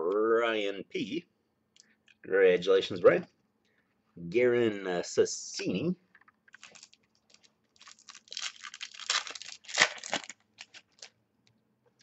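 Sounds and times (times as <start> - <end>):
foil wrapper crinkling and tearing: 6.5 - 11.2.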